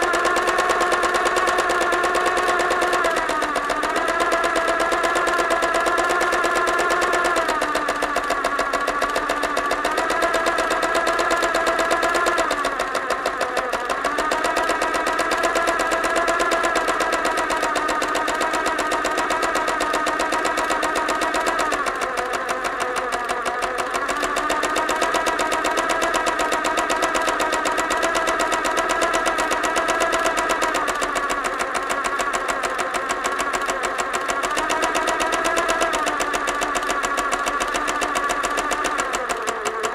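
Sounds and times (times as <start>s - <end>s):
sewing machine running fast: 0.0s - 39.9s.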